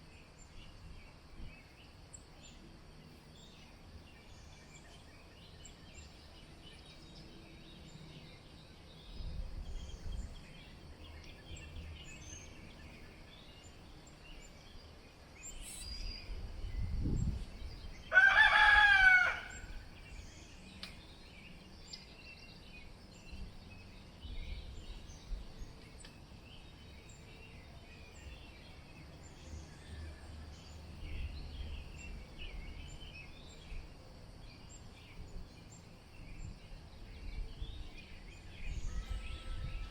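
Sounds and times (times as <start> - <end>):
small birds chirping: 0.0 - 39.9
wind rumbling on microphone: 0.4 - 1.9, 8.2 - 13.6, 15.4 - 26.6, 28.1 - 39.9
rooster crowing: 18.1 - 19.8.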